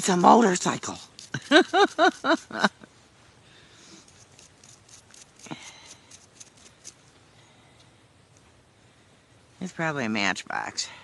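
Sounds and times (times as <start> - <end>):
brush scratching and clicks: 0.0 - 2.7, 3.9 - 7.0
scrape: 3.7 - 7.0.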